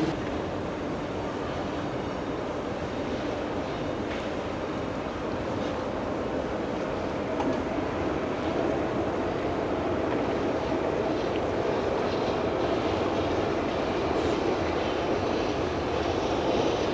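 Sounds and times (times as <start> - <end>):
ship engine drone: 0.0 - 4.1.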